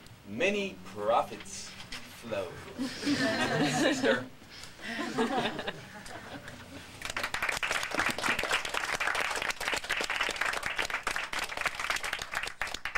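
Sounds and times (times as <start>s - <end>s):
audience applause: 7.0s - 12.9s.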